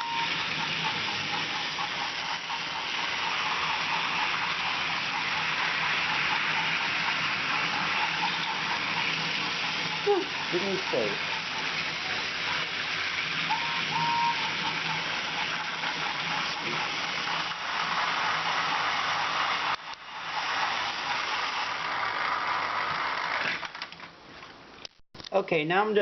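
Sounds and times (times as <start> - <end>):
toy train motors whirring: 0.0 - 24.1
wheels rattling over rails: 0.0 - 24.6
short high beeps: 13.5 - 14.5.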